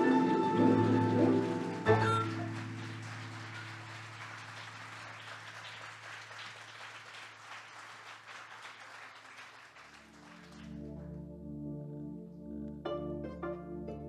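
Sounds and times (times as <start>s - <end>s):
audience applauding: 0.0s - 11.0s.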